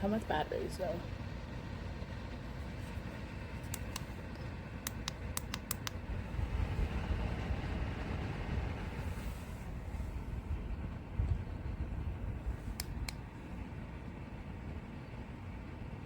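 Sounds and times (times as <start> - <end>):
heater fan rumbling: 0.0 - 16.0
small sharp clicks: 3.6 - 6.0, 12.8 - 13.2.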